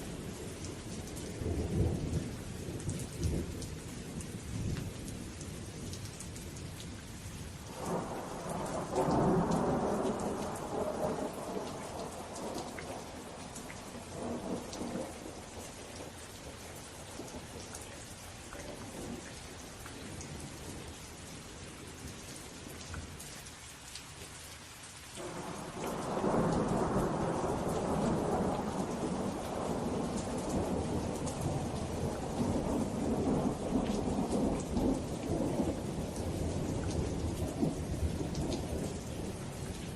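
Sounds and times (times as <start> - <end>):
steady rain: 0.0 - 39.9
thunder rolling: 25.2 - 39.3.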